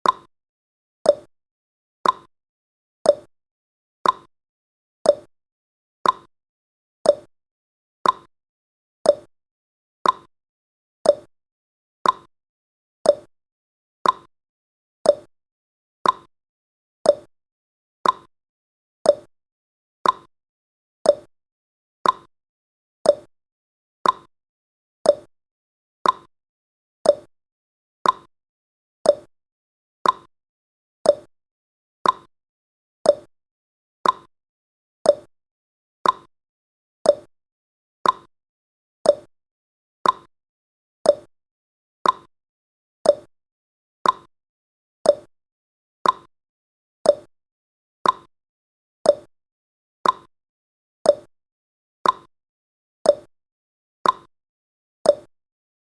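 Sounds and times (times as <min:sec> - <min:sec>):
clock ticking: 0:34.0 - 0:34.3, 0:38.0 - 0:38.3, 0:40.0 - 0:40.3, 0:44.0 - 0:44.3, 0:46.0 - 0:46.3, 0:50.0 - 0:50.3.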